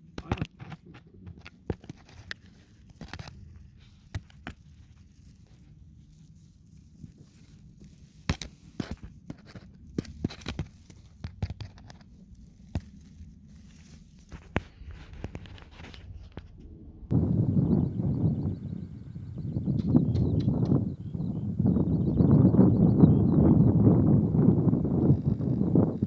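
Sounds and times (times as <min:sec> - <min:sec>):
clicks and crackling rustles: 0:00.0 - 0:17.1
low rumble: 0:14.6 - 0:26.0.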